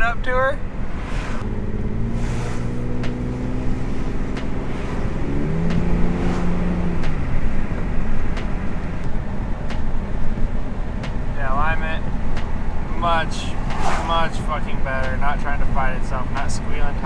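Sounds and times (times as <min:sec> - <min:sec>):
car engine running: 0:00.0 - 0:17.0
road and wind noise: 0:00.0 - 0:17.0
sharp ticks: 0:04.3 - 0:10.0.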